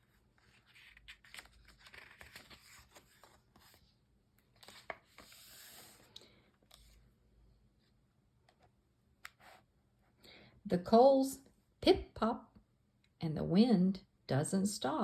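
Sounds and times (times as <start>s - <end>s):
paper page rustling: 0.0s - 6.1s.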